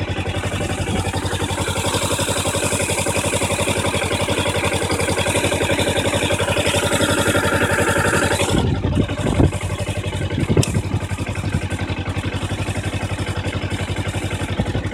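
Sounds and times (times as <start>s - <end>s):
motorcycle engine idling: 0.0s - 14.9s
high-pitched clutch squeaking: 4.6s - 9.6s.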